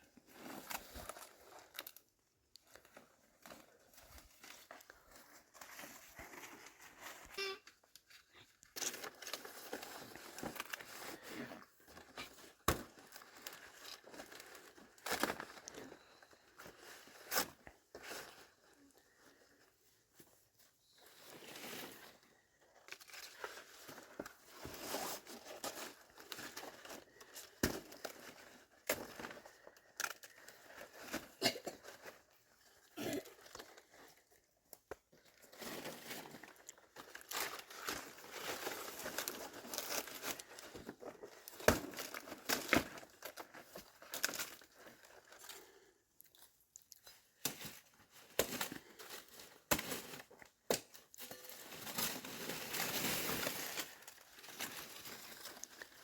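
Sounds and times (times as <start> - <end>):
packaging crinkling and rustling: 7.9 - 18.7, 22.7 - 56.0.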